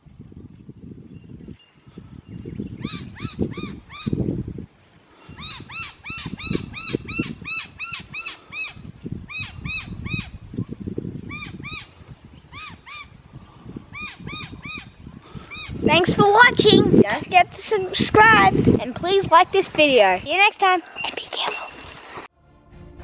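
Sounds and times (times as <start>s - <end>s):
bird calling: 5.3s - 10.4s, 11.3s - 13.2s, 20.8s - 22.0s.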